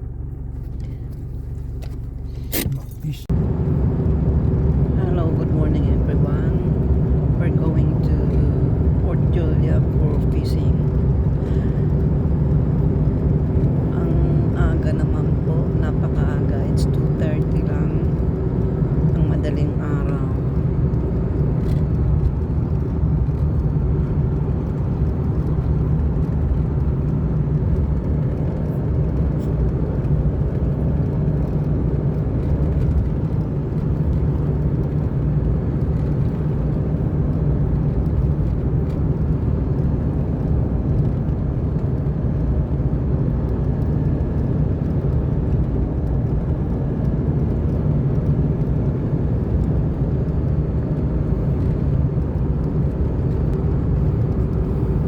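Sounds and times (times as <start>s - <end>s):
car engine and road noise: 0.0s - 55.0s.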